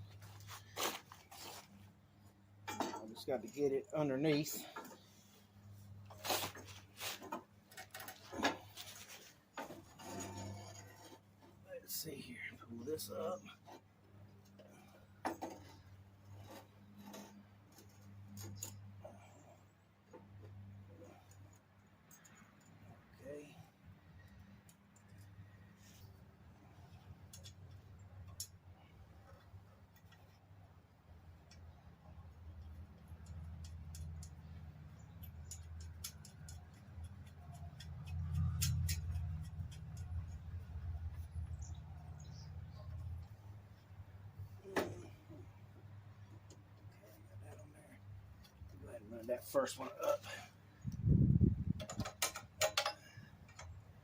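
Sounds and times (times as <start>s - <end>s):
metallic clicks of hand tools: 33.1s - 40.4s, 51.8s - 53.8s.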